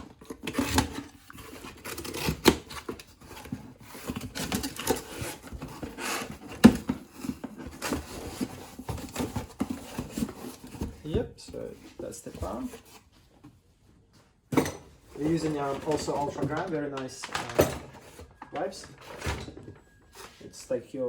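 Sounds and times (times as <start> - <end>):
plastic wrap crinkling and tearing: 15.2 - 19.2.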